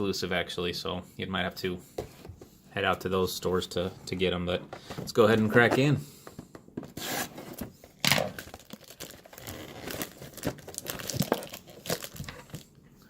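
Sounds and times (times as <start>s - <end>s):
cardboard box tearing and crinkling: 7.0s - 12.6s.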